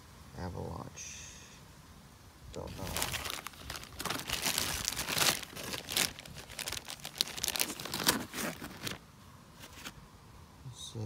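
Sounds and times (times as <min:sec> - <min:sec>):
plastic packaging crinkling: 0:02.6 - 0:09.0, 0:09.6 - 0:10.0.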